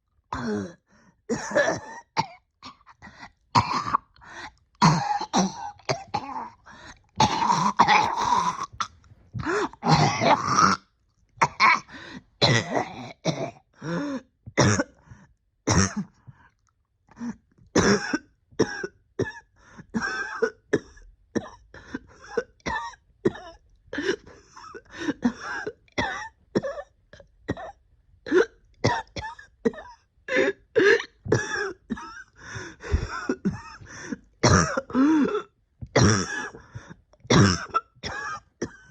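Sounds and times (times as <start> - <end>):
person coughing harshly: 1.3 - 2.9, 3.6 - 4.1, 4.8 - 6.6, 7.2 - 10.8, 11.4 - 13.6, 14.6 - 15.0, 15.7 - 16.1, 17.8 - 26.9, 27.5 - 38.9
person clearing throat: 7.2 - 10.8, 11.4 - 13.6, 14.6 - 15.0, 15.7 - 16.1, 17.8 - 21.6, 32.9 - 36.6, 37.3 - 38.9.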